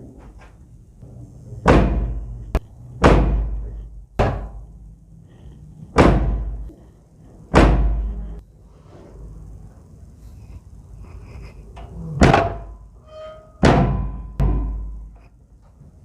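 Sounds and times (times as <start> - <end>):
heavy thuds: 1.6 - 4.8, 5.9 - 8.4.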